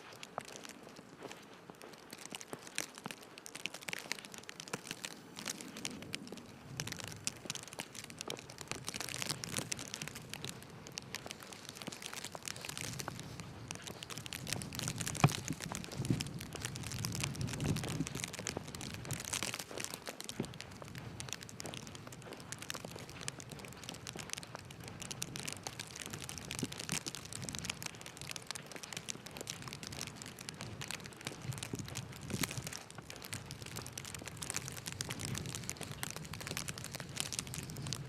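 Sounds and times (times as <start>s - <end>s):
footsteps crunching in snow: 0.0s - 38.0s.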